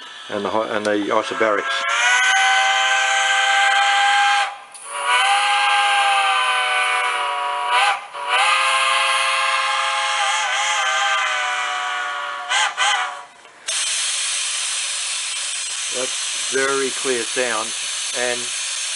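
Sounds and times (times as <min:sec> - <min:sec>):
steam locomotive whistle through speakers: 0:01.1 - 0:13.3.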